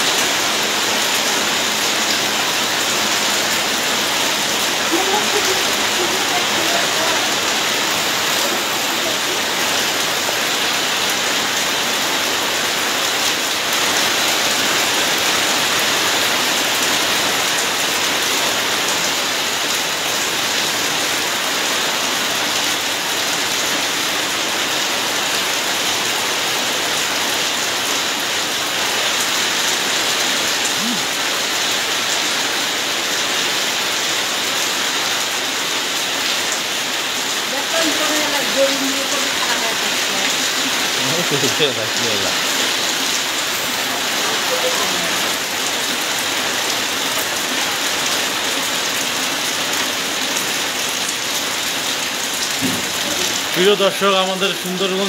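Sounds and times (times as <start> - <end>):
heavy rain pattering: 0.0 - 55.0.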